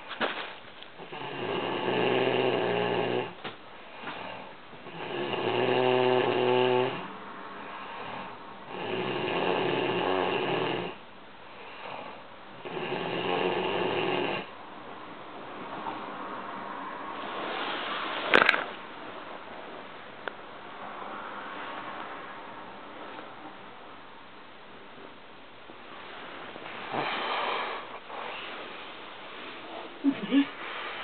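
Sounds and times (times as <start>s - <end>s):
woman snoring: 1.0s - 3.4s, 4.9s - 7.0s, 8.1s - 11.0s, 12.6s - 14.5s, 30.0s - 30.6s
quiet breathing: 2.5s - 5.4s, 6.9s - 8.8s, 10.9s - 12.5s, 25.9s - 31.0s.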